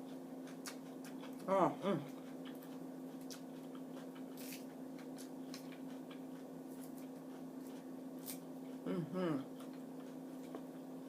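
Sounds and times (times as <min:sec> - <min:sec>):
steady low hum: 0:00.0 - 0:11.0
chewing and eating clicks: 0:00.4 - 0:01.5, 0:02.1 - 0:06.4.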